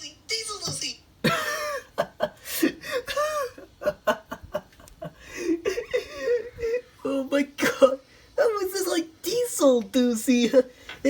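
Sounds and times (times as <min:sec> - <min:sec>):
person laughing: 0:01.2 - 0:06.9.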